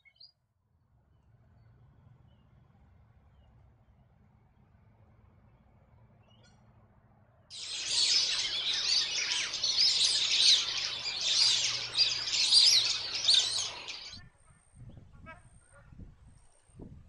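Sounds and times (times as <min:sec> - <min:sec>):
many small birds chirping: 0:07.5 - 0:14.2.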